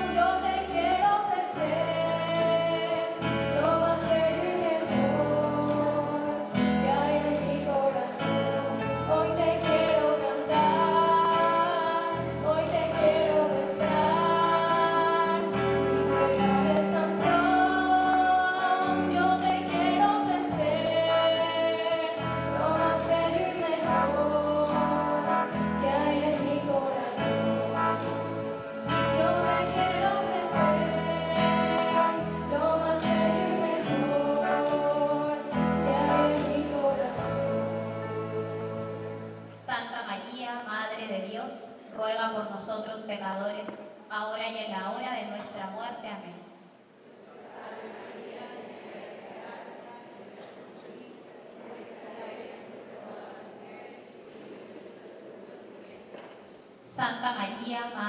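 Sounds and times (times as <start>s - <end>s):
group singing a hymn: 0.0s - 39.6s, 47.1s - 56.5s.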